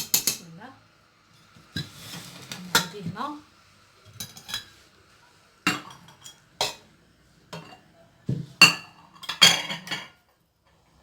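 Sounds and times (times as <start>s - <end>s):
dishes and utensils clinking: 4.1s - 4.8s, 5.7s - 6.9s, 7.5s - 7.9s, 8.5s - 10.4s.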